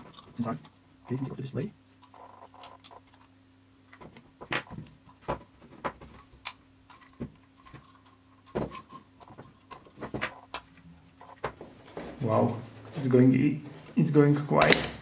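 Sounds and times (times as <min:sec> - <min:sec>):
plastic parts clicking and scraping: 0:00.0 - 0:01.4, 0:02.0 - 0:03.3, 0:03.9 - 0:11.6
faint steady hum: 0:00.0 - 0:15.0.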